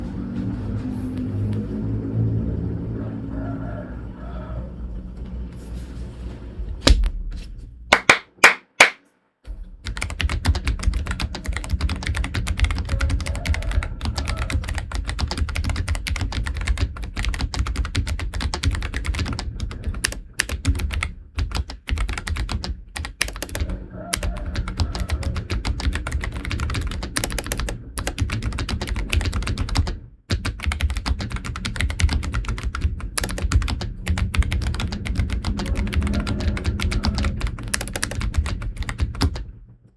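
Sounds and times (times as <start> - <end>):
mechanical keyboard typing: 9.8 - 39.5.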